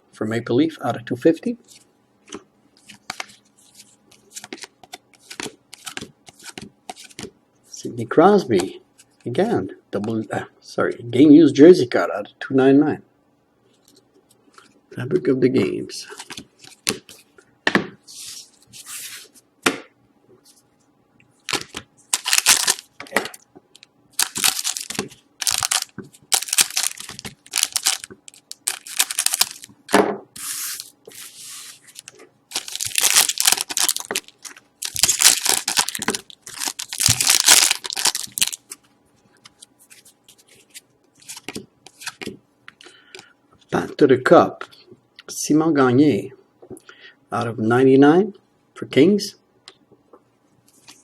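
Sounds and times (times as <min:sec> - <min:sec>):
wrappers tearing and crinkling: 0:22.1 - 0:22.9, 0:24.2 - 0:29.7, 0:30.4 - 0:38.7.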